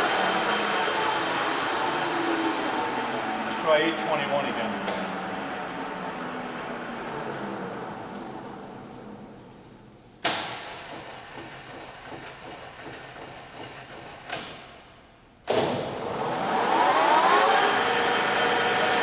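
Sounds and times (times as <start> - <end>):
lathe spindle gear whine: 0.0 - 8.7.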